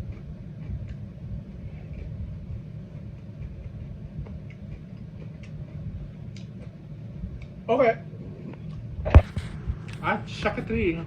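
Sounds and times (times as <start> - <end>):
person chewing food: 0.0 - 7.6
low rumble: 0.0 - 11.0.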